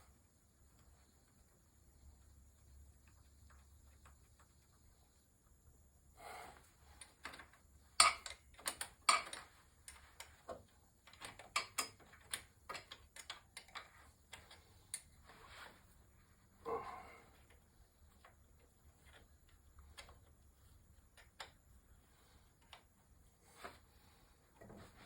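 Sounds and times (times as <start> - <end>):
metal tools clicking and knocking: 8.0 - 10.4, 11.0 - 15.0.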